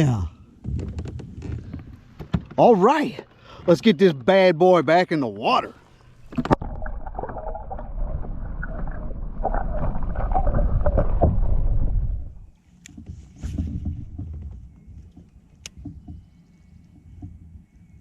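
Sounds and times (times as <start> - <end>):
knocks and clicks on kayak: 0.6 - 2.7, 12.8 - 17.6
water splashing by kayak: 5.8 - 17.7.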